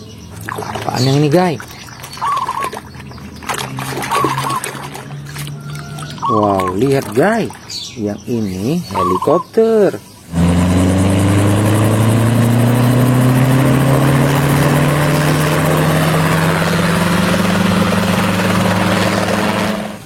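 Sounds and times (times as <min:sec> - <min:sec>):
helicopter rotor and engine drone: 0:10.3 - 0:20.0.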